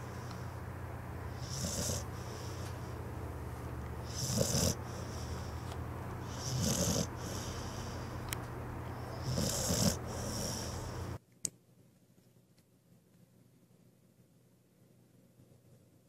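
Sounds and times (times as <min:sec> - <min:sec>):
steady low hum: 0:00.0 - 0:16.0
dog snoring: 0:01.3 - 0:03.0, 0:04.0 - 0:08.2, 0:08.9 - 0:11.2.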